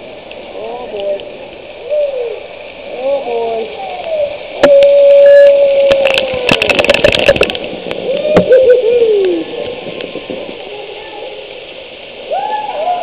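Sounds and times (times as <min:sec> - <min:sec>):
person hooting: 0:04.2 - 0:06.5.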